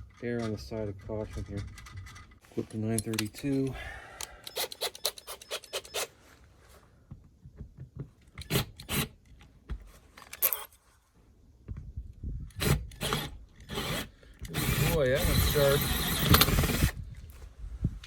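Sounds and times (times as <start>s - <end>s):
metal drill bits clicking and rattling: 1.3s - 6.1s, 10.2s - 10.8s, 12.5s - 17.0s.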